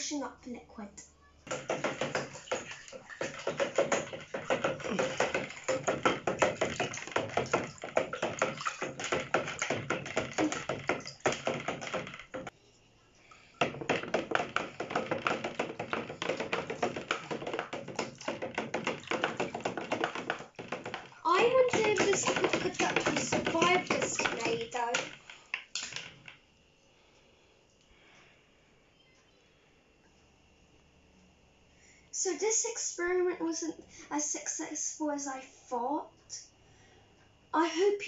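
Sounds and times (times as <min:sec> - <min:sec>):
soapy water being stirred: 0:01.5 - 0:12.5, 0:13.3 - 0:26.1
stirrer clattering against container: 0:01.5 - 0:12.5, 0:13.6 - 0:26.2.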